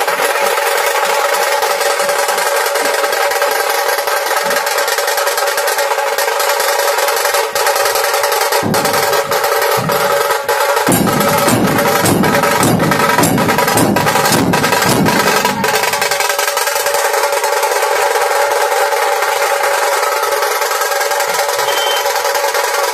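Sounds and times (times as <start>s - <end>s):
drums beating in rhythm: 0.0s - 22.9s.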